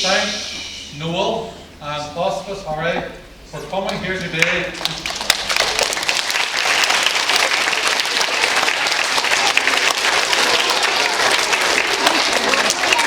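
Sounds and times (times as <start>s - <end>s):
children applauding: 4.8s - 13.0s.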